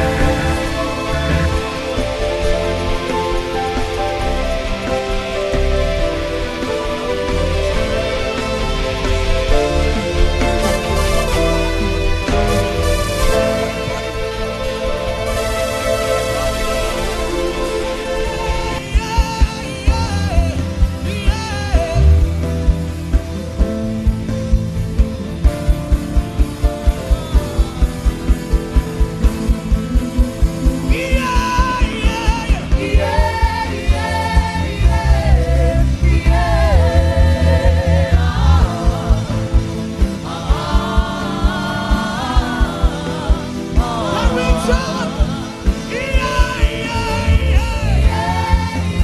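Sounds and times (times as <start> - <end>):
gospel backing with steady beat: 0.0 - 49.0
man humming and singing: 41.8 - 49.0.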